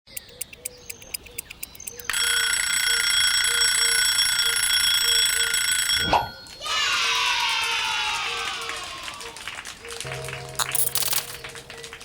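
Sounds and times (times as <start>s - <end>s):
alarm clock ticking: 0.0s - 6.4s
alarm clock ringing: 0.1s - 6.5s.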